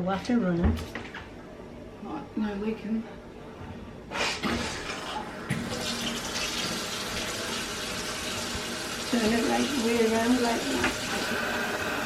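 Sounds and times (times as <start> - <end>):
tap water running into sink: 4.5 - 12.0.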